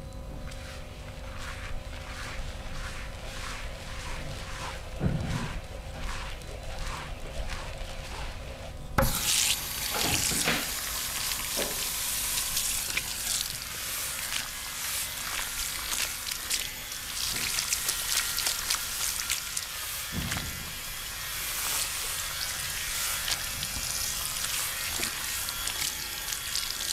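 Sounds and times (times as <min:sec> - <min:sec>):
hands rubbing skin and hair: 0:00.5 - 0:19.7.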